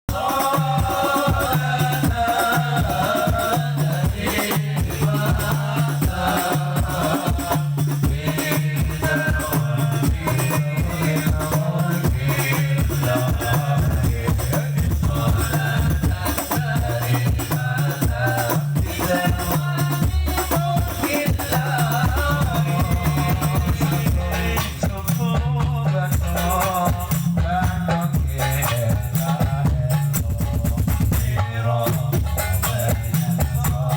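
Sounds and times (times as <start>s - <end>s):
man singing: 0.1s - 33.9s
rhythmic percussion: 0.1s - 33.9s
bass line: 22.0s - 33.9s.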